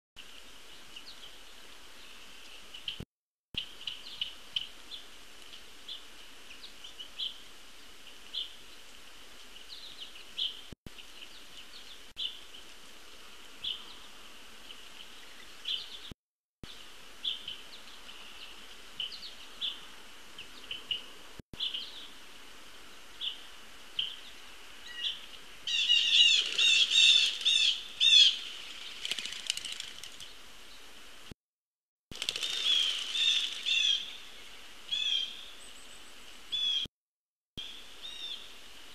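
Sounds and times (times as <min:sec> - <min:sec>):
birds chirping: 0:23.2 - 0:30.9, 0:32.2 - 0:36.9
rapid repeated bird calls: 0:24.9 - 0:30.4, 0:32.2 - 0:36.9.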